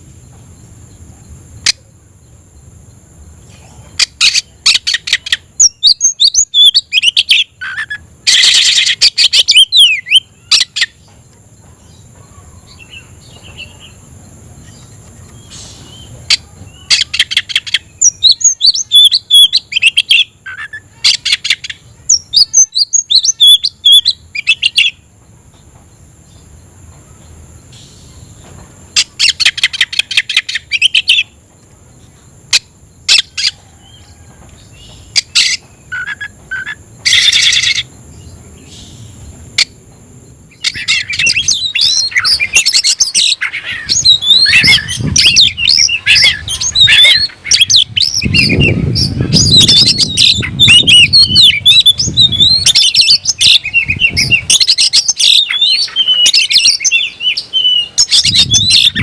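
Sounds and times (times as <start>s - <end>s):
bird singing whistles and chatter: 4.0s - 11.0s, 14.6s - 25.0s, 29.0s - 31.4s, 34.8s - 37.9s, 40.5s - 59.0s.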